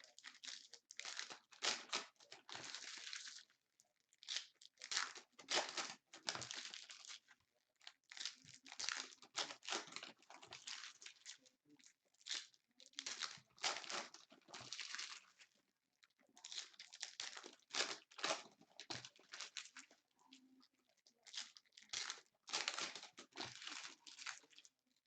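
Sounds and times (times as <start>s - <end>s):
packaging torn and crinkled: 0.1s - 3.3s, 4.2s - 7.2s, 8.0s - 11.3s, 12.2s - 15.3s, 16.4s - 20.0s, 21.3s - 24.7s.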